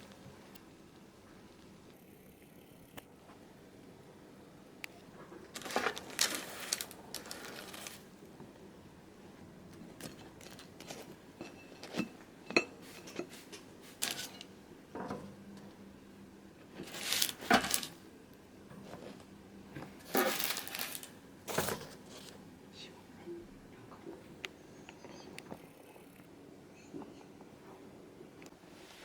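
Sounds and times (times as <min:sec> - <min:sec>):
handling rustles and clicks: 0:04.8 - 0:08.0, 0:09.7 - 0:14.5
objects clattering: 0:05.1 - 0:08.1, 0:09.8 - 0:15.6, 0:16.7 - 0:18.0, 0:18.7 - 0:22.4.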